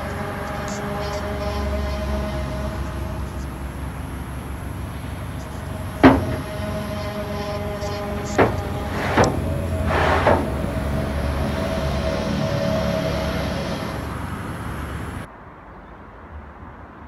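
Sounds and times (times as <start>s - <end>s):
low rumbling drone: 0.0s - 15.3s
mid-pitched hum: 0.0s - 15.3s.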